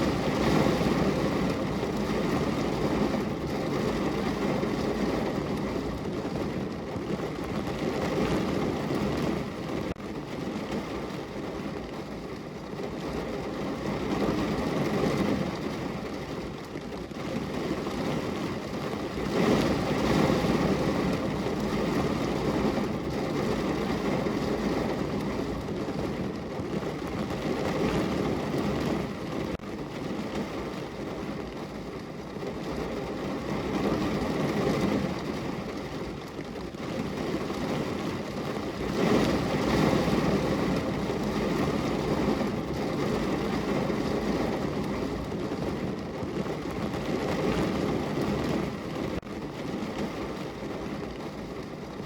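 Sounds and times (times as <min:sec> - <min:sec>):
heavy rain on a car roof: 0:00.0 - 0:52.0.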